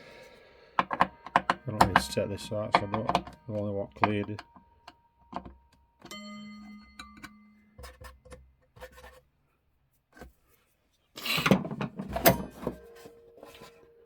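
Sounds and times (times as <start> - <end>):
faint ringing tone: 0.0 - 8.0, 12.2 - 14.0.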